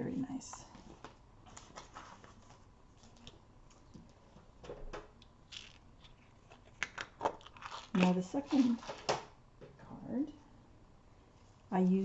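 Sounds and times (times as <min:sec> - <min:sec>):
paper card stock rustling: 0:05.5 - 0:09.1.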